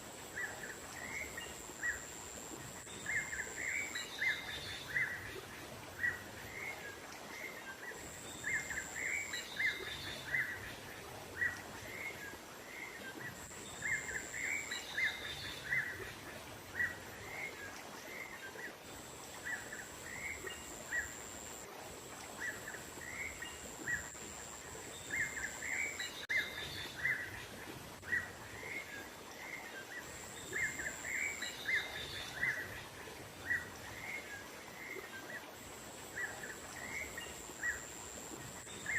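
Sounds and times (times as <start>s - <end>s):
outdoor noise: 0.0s - 38.9s
thin high steady tone: 11.6s - 27.3s.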